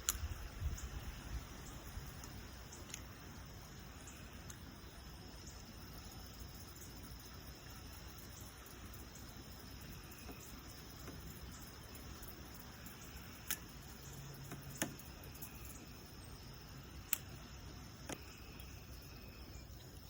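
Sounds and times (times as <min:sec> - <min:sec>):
sharp clicks: 0:00.0 - 0:00.4, 0:13.4 - 0:13.8, 0:17.0 - 0:18.7
crickets trilling: 0:00.0 - 0:20.0.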